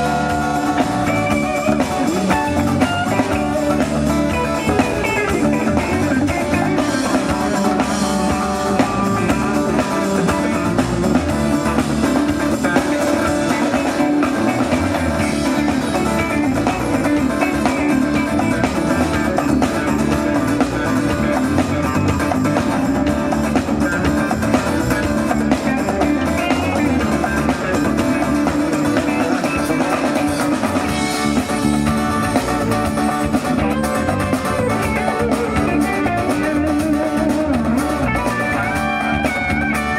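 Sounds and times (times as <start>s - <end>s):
drum kit: 0.0s - 39.9s
folk band playing live: 0.0s - 39.9s
guitar: 0.0s - 39.9s.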